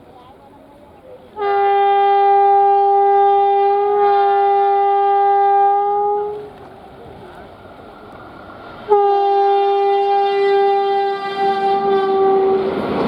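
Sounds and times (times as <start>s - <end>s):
locomotive air horn blast: 1.4s - 6.6s, 8.9s - 12.8s.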